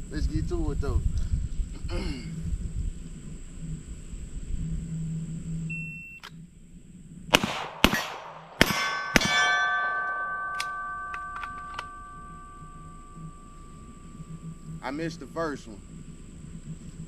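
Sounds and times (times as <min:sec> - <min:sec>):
gunshots: 0:07.3 - 0:10.7
steel plates ringing: 0:08.4 - 0:15.4.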